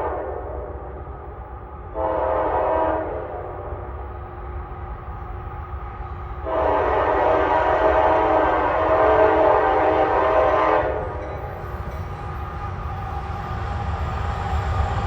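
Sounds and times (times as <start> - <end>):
train horn blast: 0.0 - 0.8, 1.9 - 3.8, 6.4 - 11.2.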